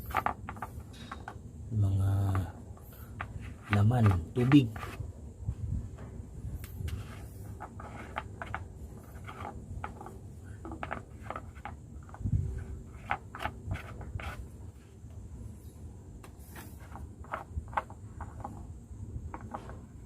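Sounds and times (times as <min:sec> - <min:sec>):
hands scraping and clicking: 0:06.6 - 0:12.2.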